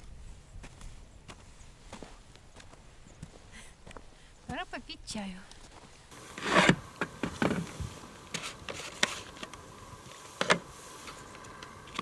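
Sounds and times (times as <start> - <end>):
short rustle: 6.1 - 12.0.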